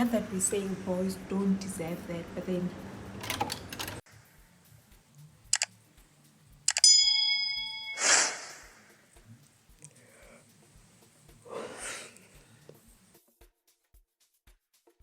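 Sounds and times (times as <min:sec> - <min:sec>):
sharp clicks: 0:05.5 - 0:05.8, 0:06.7 - 0:06.9
bell-like ding: 0:06.8 - 0:08.1.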